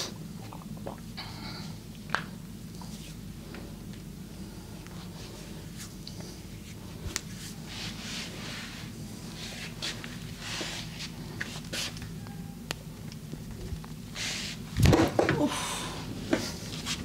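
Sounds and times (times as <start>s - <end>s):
steady low hum: 0.0s - 17.0s
hands rubbing skin and cloth: 5.0s - 12.1s.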